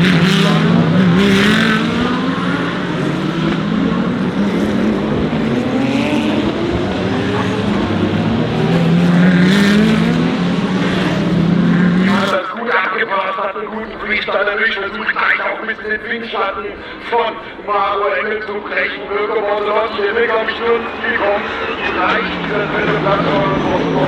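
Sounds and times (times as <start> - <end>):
race cars accelerating: 0.0 - 12.5, 18.4 - 24.0.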